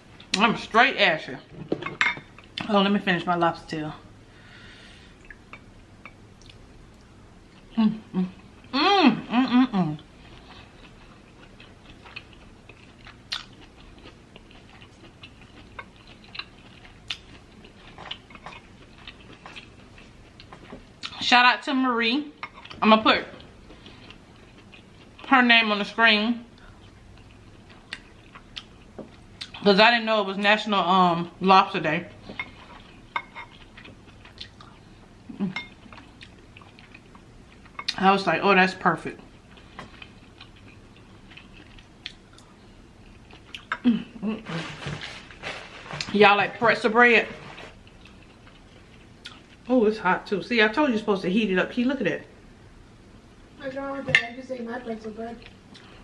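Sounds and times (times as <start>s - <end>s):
chewing and mouth clicks: 6.4s - 7.7s, 10.3s - 21.2s, 26.6s - 29.6s, 32.7s - 34.8s, 35.6s - 38.0s, 39.5s - 43.8s, 47.8s - 49.7s.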